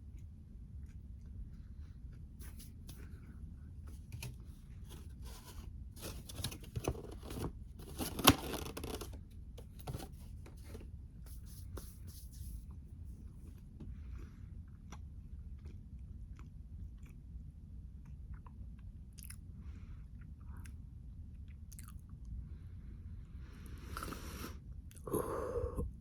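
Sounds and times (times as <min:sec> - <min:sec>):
tearing and scraping: 0:04.2 - 0:09.2.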